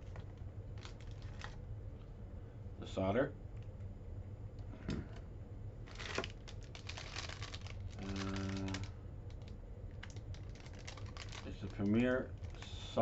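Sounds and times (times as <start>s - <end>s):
plastic packaging crinkling: 0.0s - 1.6s, 5.8s - 13.0s.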